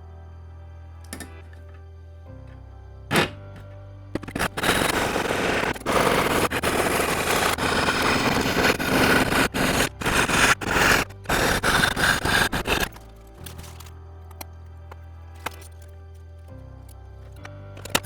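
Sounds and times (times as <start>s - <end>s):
saw rasping through metal: 4.2s - 13.0s.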